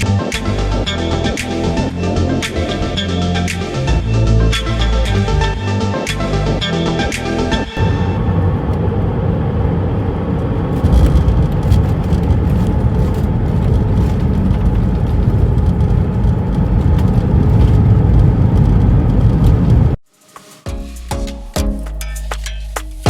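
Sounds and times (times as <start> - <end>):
engine and airflow rumble: 0.0 - 20.0.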